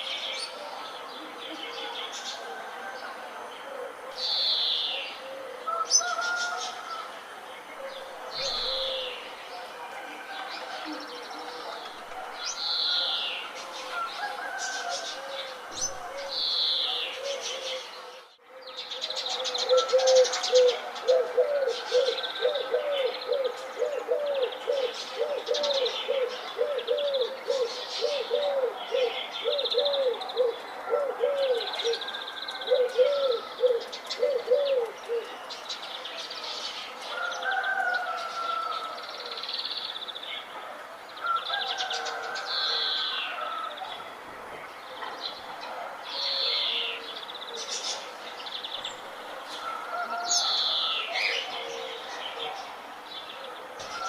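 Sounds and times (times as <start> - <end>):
low hooting bird call: 7.8 - 9.3, 12.5 - 35.4.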